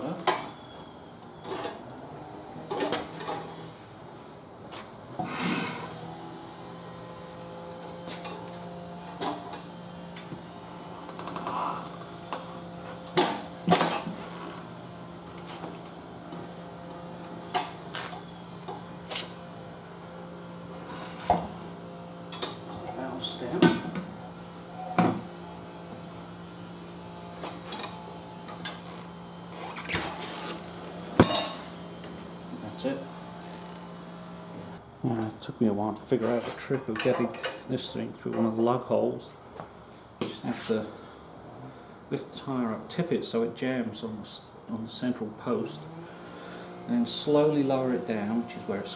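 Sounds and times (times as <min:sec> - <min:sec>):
high ringing squeal: 0:00.0 - 0:01.8, 0:11.3 - 0:18.6, 0:30.8 - 0:31.8
metal clank: 0:31.2 - 0:31.8
metal knocks and scrapes: 0:31.2 - 0:31.8.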